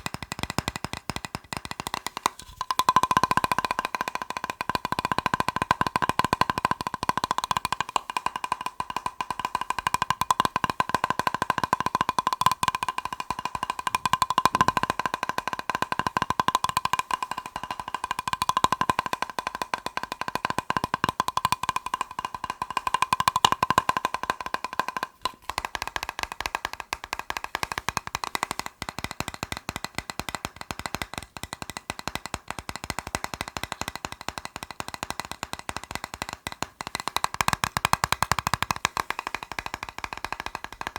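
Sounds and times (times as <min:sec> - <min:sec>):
fast tapping on a plastic box: 0:00.0 - 0:40.9.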